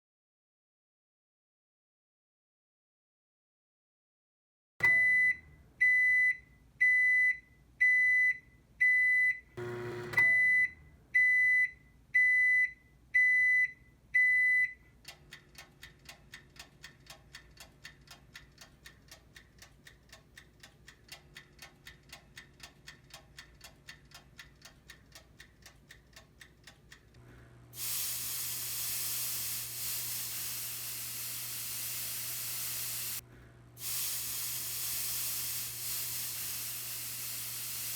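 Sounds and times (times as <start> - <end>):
electronic alarm beeping: 4.8 - 14.8
faint fast ticking: 15.1 - 27.2
spray hissing: 27.8 - 33.2, 33.8 - 37.9.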